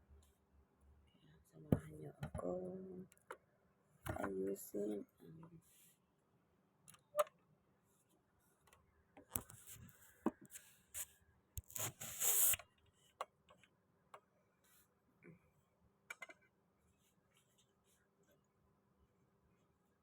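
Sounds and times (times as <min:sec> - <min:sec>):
scrape: 0:09.5 - 0:12.6.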